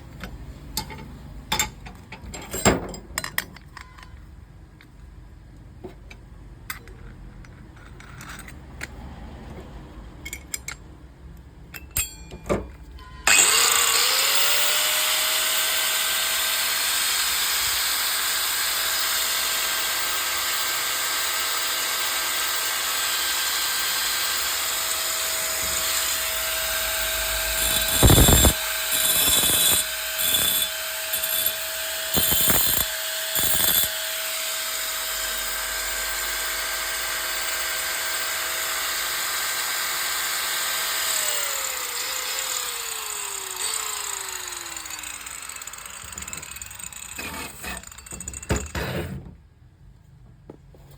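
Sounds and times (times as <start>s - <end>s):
angle grinder whining: 13.2s - 48.7s.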